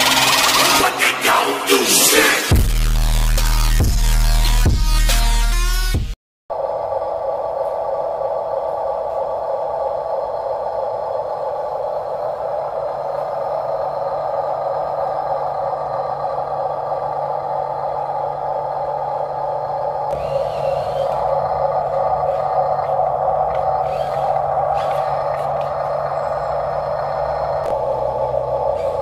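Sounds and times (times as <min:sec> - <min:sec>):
electric motors whirring: 0:07.6 - 0:29.0.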